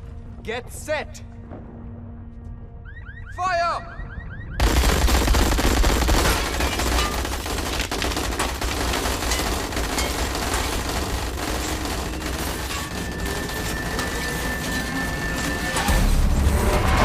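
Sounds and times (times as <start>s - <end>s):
rapid gunfire: 4.6s - 14.7s.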